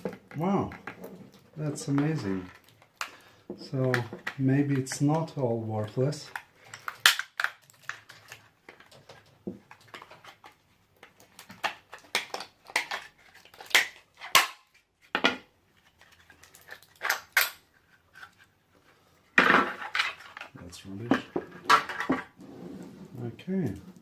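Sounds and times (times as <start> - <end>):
plastic casing clicking and cracking: 6.2 - 14.8, 16.0 - 17.6.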